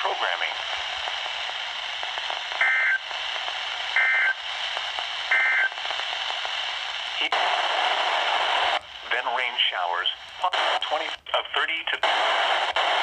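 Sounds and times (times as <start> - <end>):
radio receiver hiss: 0.0 - 13.0.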